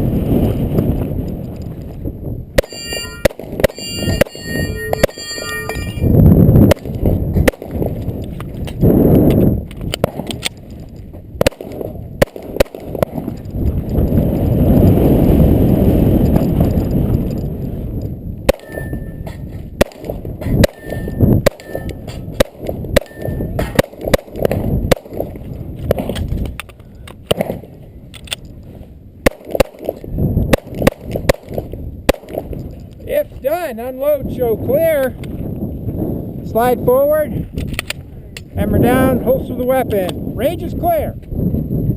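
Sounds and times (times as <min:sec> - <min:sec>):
pistol shots: 0:02.6 - 0:05.4, 0:06.7 - 0:08.0, 0:09.9 - 0:10.6, 0:11.4 - 0:13.4, 0:18.5 - 0:26.2, 0:27.3 - 0:27.7, 0:29.2 - 0:32.6
steel targets ringing: 0:02.6 - 0:06.1, 0:18.5 - 0:19.3, 0:20.7 - 0:22.1.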